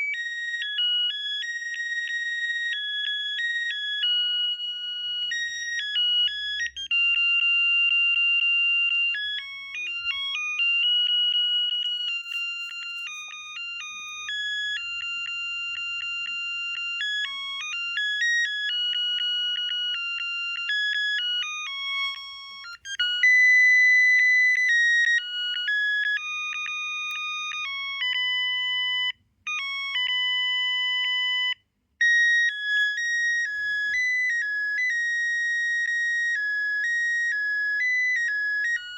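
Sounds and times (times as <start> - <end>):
phone ringtone beeping melodies: 0.0 - 38.9.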